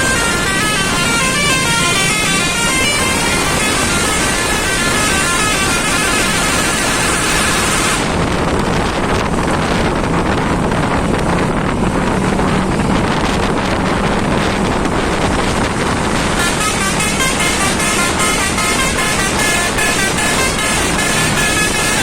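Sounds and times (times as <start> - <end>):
bus horn playing a melody: 0.0 - 8.5, 14.3 - 22.0
road and wind noise: 0.0 - 22.0.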